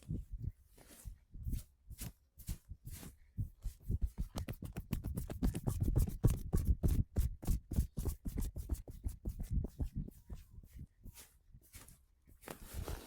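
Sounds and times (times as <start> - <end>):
hands slapping body: 4.1 - 6.6.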